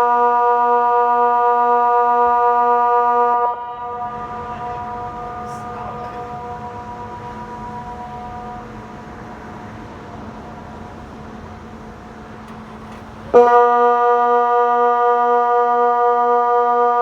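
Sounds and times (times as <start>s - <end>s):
loud low siren tone: 0.0s - 9.5s, 13.3s - 17.0s
distant siren tone: 0.0s - 17.0s.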